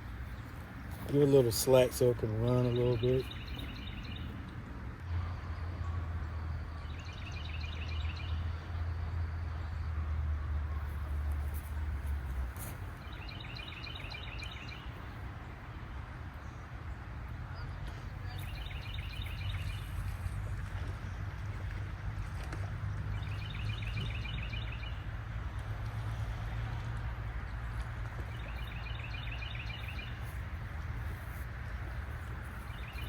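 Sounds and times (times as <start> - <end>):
low steady hum: 0.0 - 33.0
outdoor background rush: 0.0 - 33.0
songbird trilling: 1.7 - 4.2.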